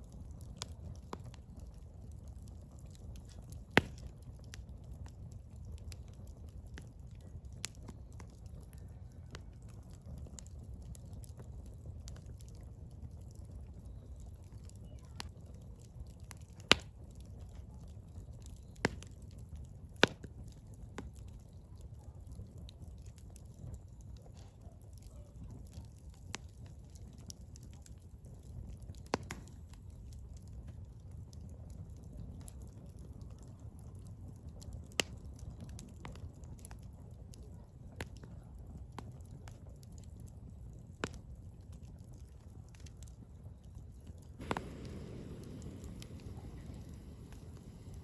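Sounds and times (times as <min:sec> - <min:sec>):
fire low rumble: 0:00.0 - 0:48.0
firewood crackling and popping: 0:00.0 - 0:48.0.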